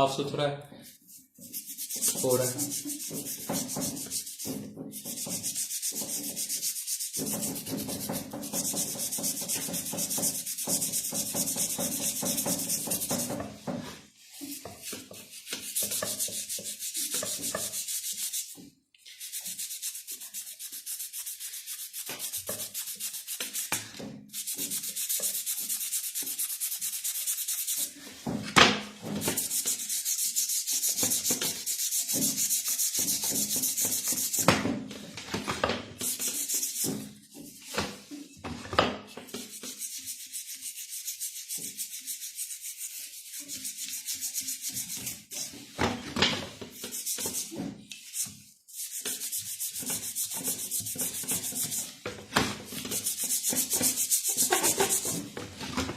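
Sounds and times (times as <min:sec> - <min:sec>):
scrubbing by hand: 0:00.8 - 0:13.4, 0:14.2 - 0:28.0, 0:29.3 - 0:34.4, 0:46.8 - 0:52.0, 0:52.8 - 0:55.3.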